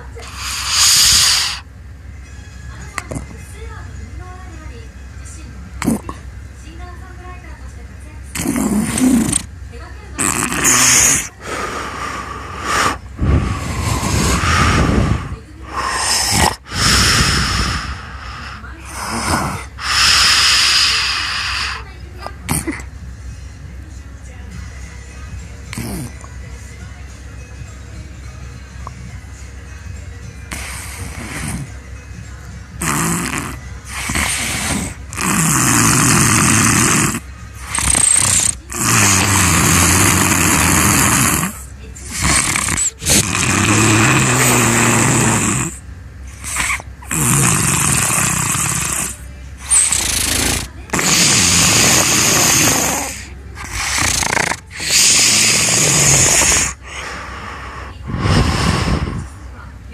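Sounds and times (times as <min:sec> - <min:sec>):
loud rough human snoring: 0:00.0 - 0:01.6, 0:05.8 - 0:06.2, 0:08.3 - 0:09.5, 0:10.2 - 0:21.9, 0:22.5 - 0:22.9, 0:25.7 - 0:26.3, 0:30.5 - 0:31.8, 0:32.8 - 0:59.4
quiet breathing: 0:10.6 - 0:21.9, 0:48.7 - 0:59.8.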